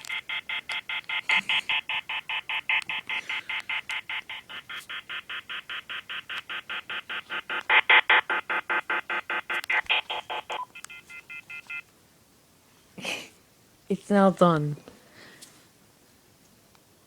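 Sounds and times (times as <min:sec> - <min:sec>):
telephone keypad beeps: 0:00.0 - 0:11.8.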